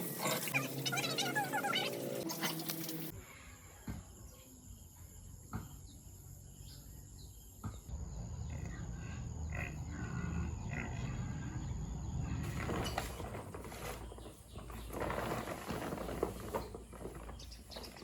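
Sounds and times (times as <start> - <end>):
pigs grunting: 8.2 - 13.0.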